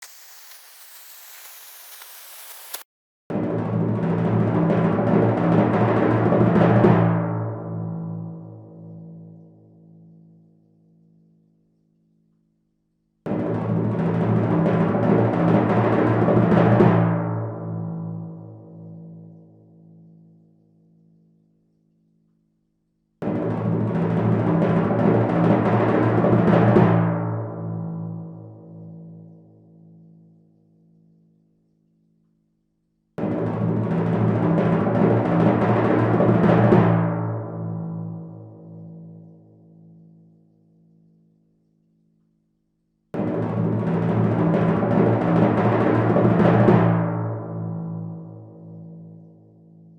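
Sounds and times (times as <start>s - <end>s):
timpani roll: 33.2s - 37.8s, 43.2s - 47.6s.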